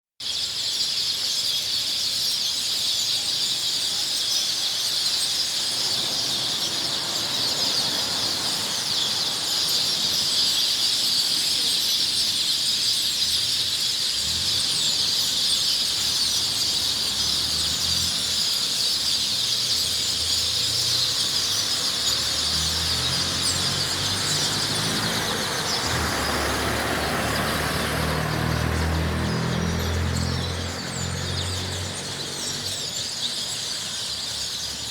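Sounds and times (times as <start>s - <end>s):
small birds chirping: 0.2s - 34.9s.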